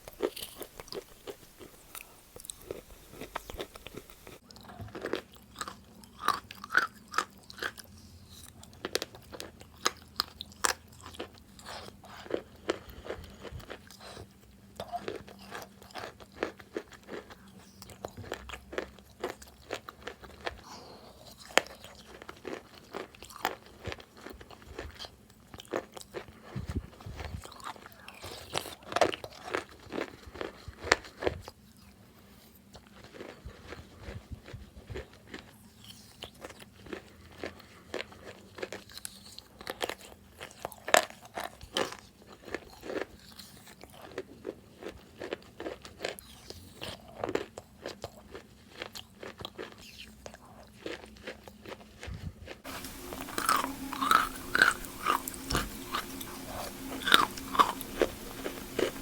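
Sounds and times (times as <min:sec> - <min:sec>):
chewing chalk crunches: 0:00.0 - 0:20.7, 0:45.4 - 0:59.0.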